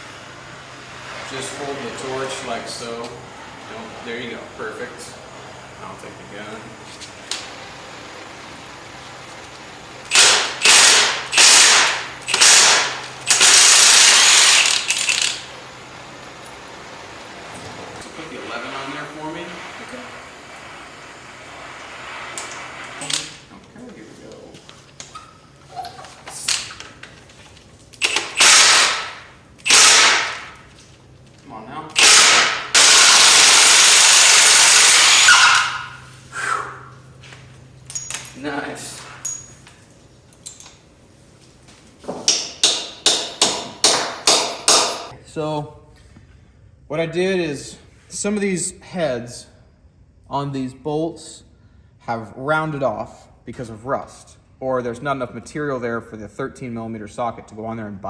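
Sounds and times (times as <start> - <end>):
impact wrench running: 9.2 - 17.2, 28.0 - 30.7, 31.9 - 36.2, 42.2 - 45.1
impact gun hammering: 28.0 - 30.6, 42.2 - 45.1.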